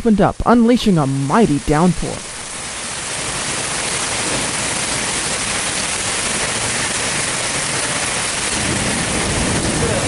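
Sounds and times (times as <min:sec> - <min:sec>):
heavy rain: 0:00.0 - 0:10.0.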